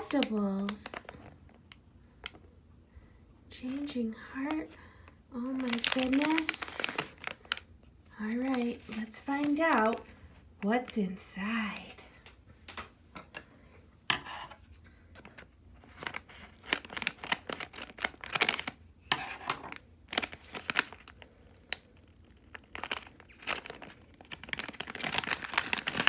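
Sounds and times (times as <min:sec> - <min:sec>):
plastic wrapper tearing and crinkling: 0:00.0 - 0:01.6, 0:05.4 - 0:07.7, 0:08.4 - 0:10.0, 0:15.2 - 0:26.0.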